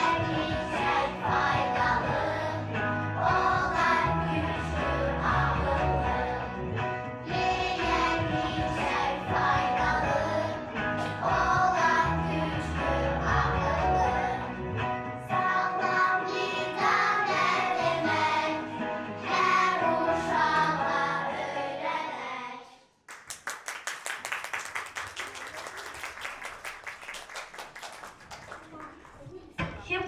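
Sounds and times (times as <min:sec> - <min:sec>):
children singing: 0:00.0 - 0:06.5, 0:07.3 - 0:14.5, 0:15.3 - 0:22.7
recorded backing music: 0:00.0 - 0:22.1
audience applause: 0:23.1 - 0:29.4.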